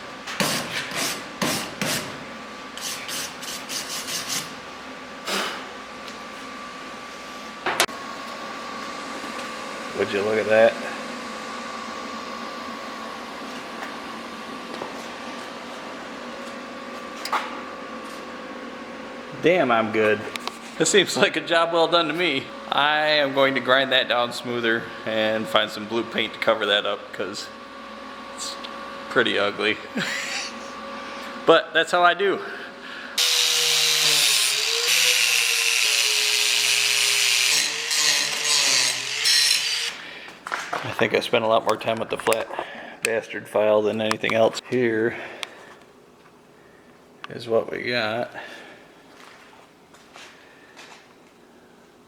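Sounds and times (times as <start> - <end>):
machine hum: 0.0 - 52.0
power grinder grinding metal: 33.2 - 40.0.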